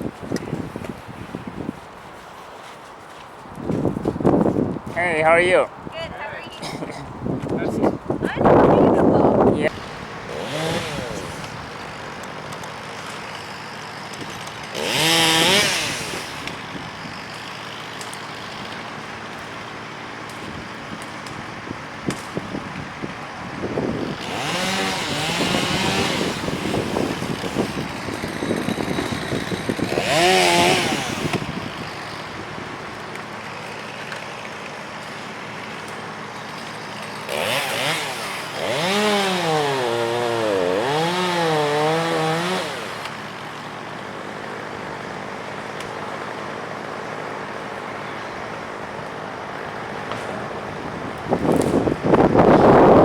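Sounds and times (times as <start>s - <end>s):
steady outdoor hiss: 0.0s - 38.6s, 39.3s - 53.0s
chainsaw revving: 9.7s - 22.1s, 22.9s - 50.2s.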